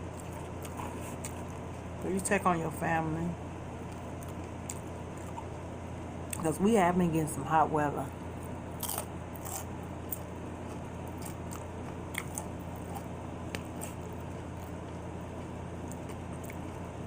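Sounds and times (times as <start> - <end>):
steady low hum: 0.0 - 17.0
person chewing: 0.1 - 2.0, 8.8 - 17.0
tortilla chip crunches: 8.8 - 16.9.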